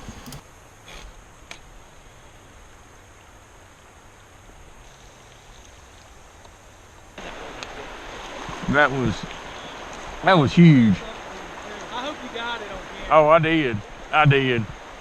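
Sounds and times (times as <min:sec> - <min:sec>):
light clicks: 0:00.0 - 0:00.4
flowing river water: 0:11.1 - 0:13.1.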